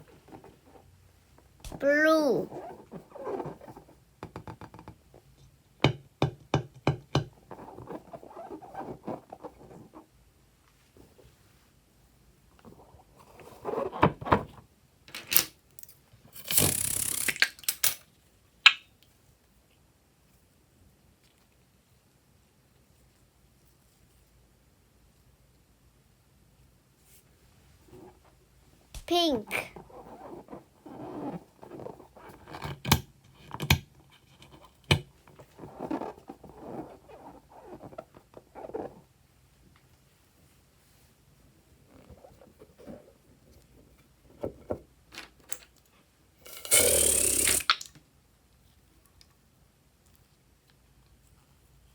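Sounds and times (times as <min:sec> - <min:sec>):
short hissing rush: 0:46.5 - 0:47.7.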